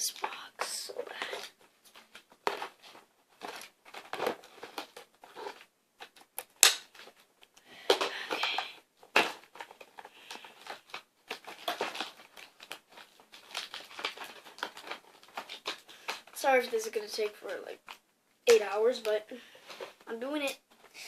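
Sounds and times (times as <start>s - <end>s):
packaging tearing and crinkling: 1.1s - 7.5s, 8.1s - 16.4s.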